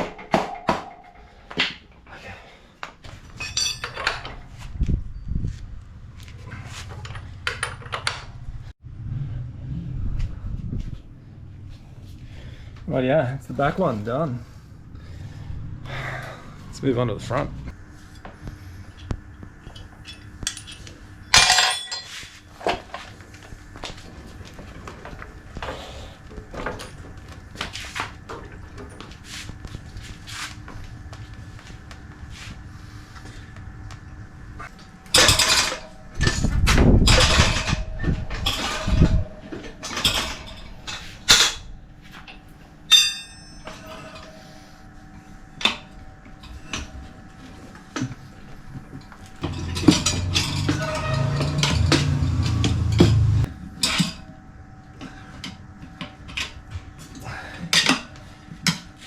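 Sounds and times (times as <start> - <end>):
metal tools clinking and clattering: 3.1 - 5.2, 19.8 - 22.3, 35.1 - 44.4, 49.4 - 54.2
ringing metal clink: 3.4 - 4.2, 42.9 - 44.3.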